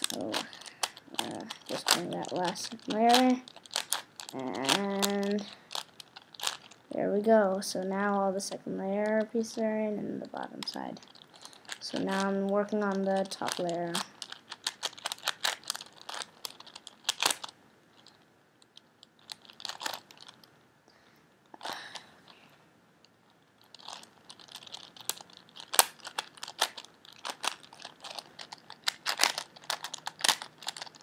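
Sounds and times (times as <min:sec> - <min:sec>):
plastic puzzle cube layers clicking: 0:00.0 - 0:06.8, 0:10.6 - 0:20.5, 0:23.7 - 0:31.0.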